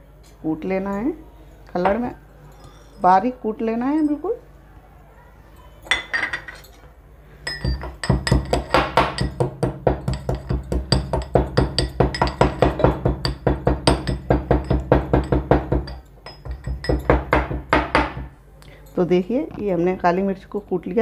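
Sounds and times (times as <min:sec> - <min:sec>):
pestle pounding in a mortar: 0:07.5 - 0:18.4.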